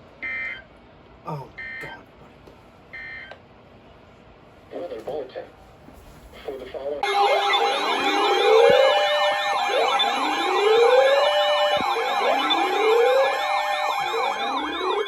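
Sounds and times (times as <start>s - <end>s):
siren slow wail: 7.0s - 15.0s
siren yelping sweeps: 7.0s - 15.0s
steady high siren tones: 7.0s - 15.0s.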